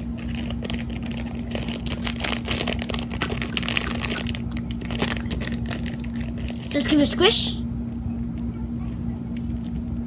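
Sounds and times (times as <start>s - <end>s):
low electrical hum: 0.0s - 10.0s
hands crackling foam toy: 0.1s - 7.0s.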